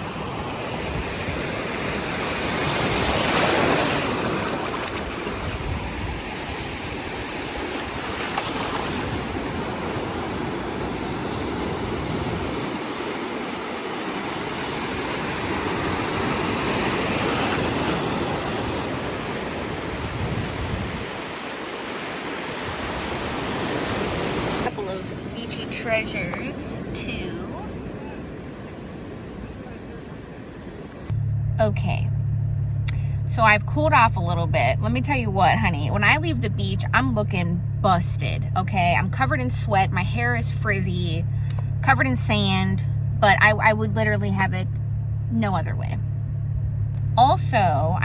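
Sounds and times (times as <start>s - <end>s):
surf breaking on shore: 0.0s - 31.1s
wind rumbling on microphone: 0.0s - 31.1s.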